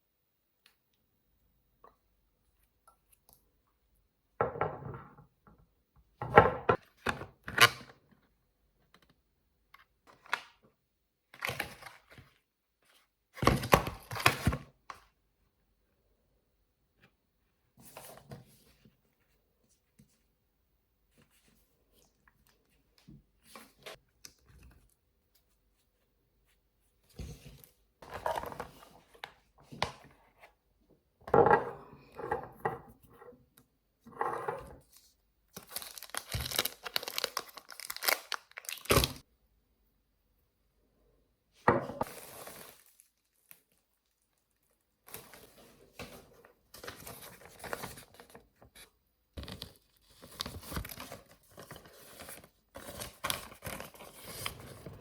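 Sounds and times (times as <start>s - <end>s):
crinkling and tearing handling noises: 35.5s - 39.2s, 49.4s - 54.8s.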